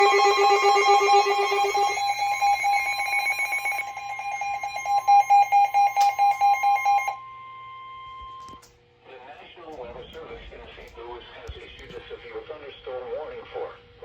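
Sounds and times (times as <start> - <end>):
weather radio alarm beeping: 0.0 - 8.6
steady warning alarm tone: 0.0 - 8.7.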